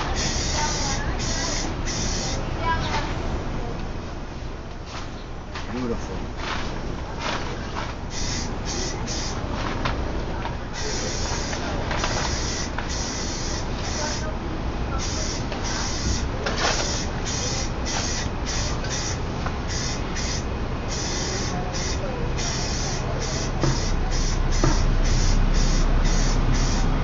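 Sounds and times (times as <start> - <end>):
spray-paint can hissing: 0.0 - 2.4, 8.1 - 9.4, 10.8 - 14.3, 15.0 - 27.0.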